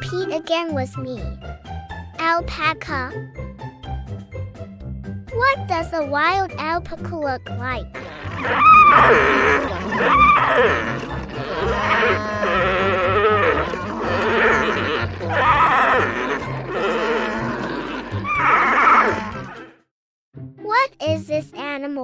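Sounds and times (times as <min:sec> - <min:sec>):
background music: 0:00.0 - 0:19.8
alpacas calling: 0:08.0 - 0:19.6.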